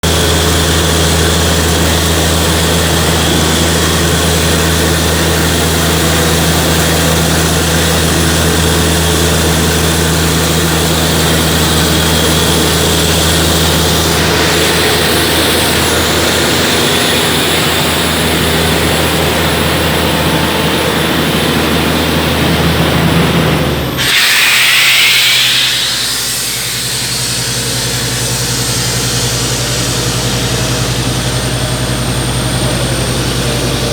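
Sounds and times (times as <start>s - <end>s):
air compressor engine humming: 0.0s - 33.9s
loud rush of air: 8.9s - 32.4s.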